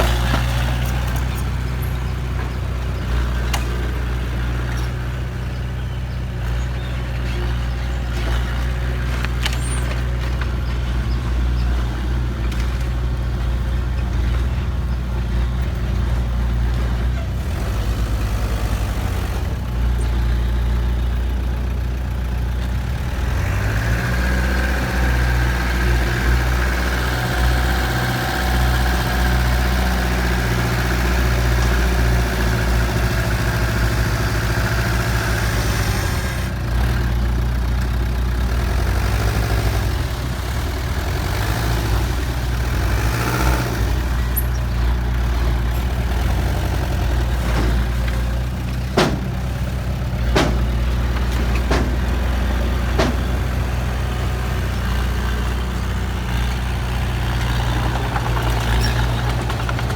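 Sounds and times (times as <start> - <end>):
truck engine idling: 0.0 - 59.9
sharp knocks: 48.9 - 49.6, 50.3 - 50.9, 52.8 - 53.5.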